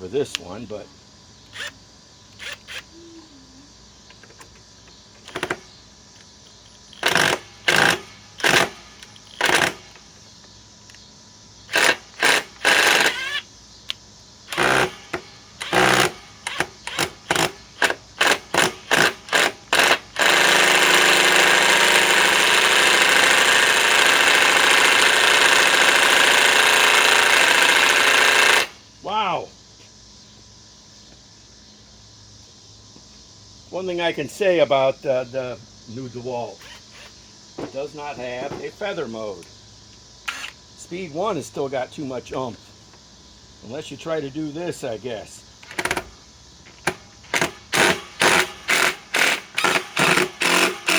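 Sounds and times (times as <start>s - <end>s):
impact driver driving screw: 40.3s - 40.6s.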